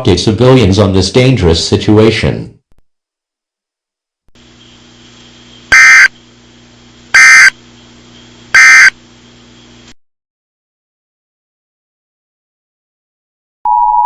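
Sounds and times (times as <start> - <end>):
faint steady hum: 3.0 - 10.0.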